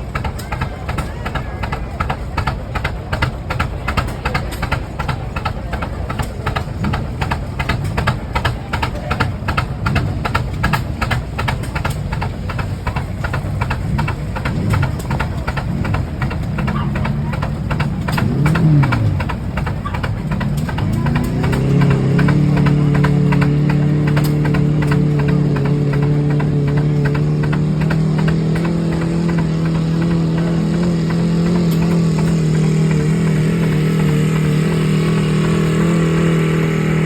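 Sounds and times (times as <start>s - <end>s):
tractor engines beating slowly: 0.0s - 37.0s.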